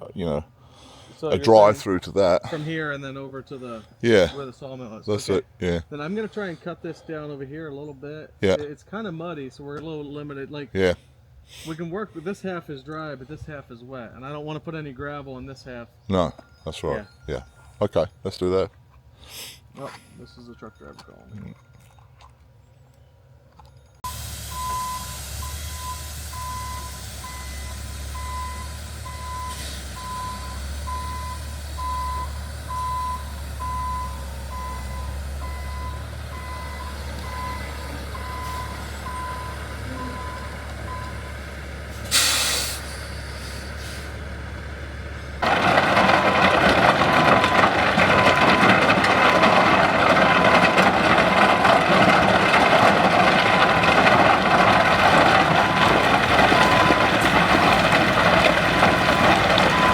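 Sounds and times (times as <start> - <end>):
truck backup alarm beeping: 19.9 - 21.9, 23.7 - 59.9
truck engine running: 24.0 - 59.9
air brake hiss: 42.0 - 44.2.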